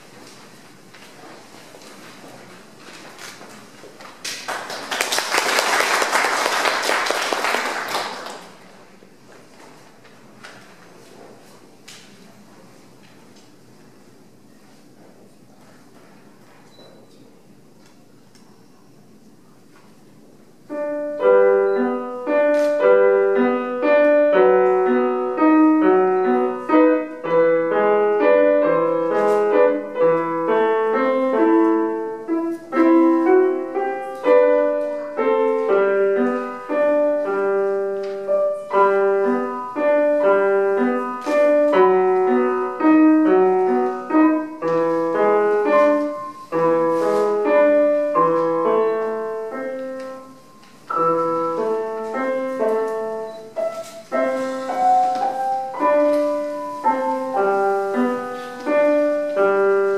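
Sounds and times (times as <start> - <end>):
solo piano classical piece: 20.1 - 59.9.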